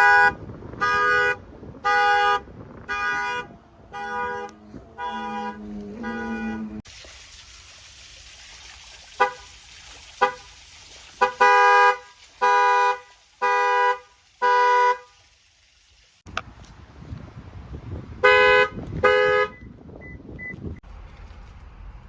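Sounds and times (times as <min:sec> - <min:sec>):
car horn honking: 0:00.0 - 0:06.8, 0:09.2 - 0:09.4, 0:11.2 - 0:15.1, 0:18.2 - 0:19.7.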